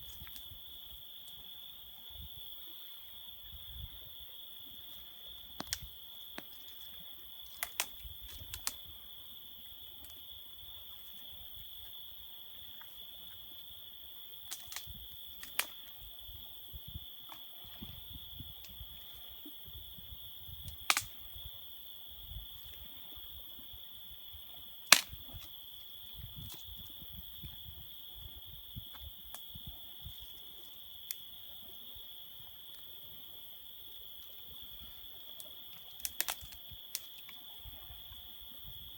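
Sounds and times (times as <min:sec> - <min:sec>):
crickets trilling: 0:00.0 - 0:38.9
campfire crackling and popping: 0:20.8 - 0:21.1, 0:24.9 - 0:25.2, 0:36.0 - 0:37.0.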